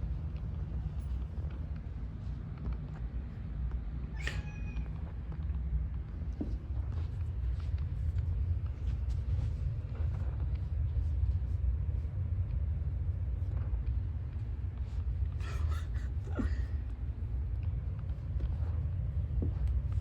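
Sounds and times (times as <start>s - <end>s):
low rumble: 0.0s - 20.0s.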